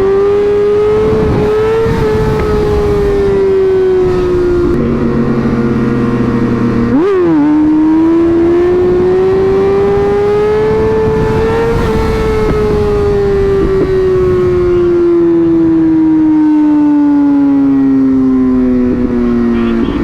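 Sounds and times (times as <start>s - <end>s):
wind rush noise: 0.0s - 15.4s
motorcycle engine revving: 0.0s - 20.0s.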